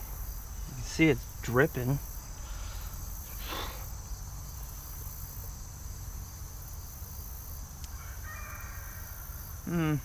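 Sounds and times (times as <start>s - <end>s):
insects chirring: 0.0s - 10.0s.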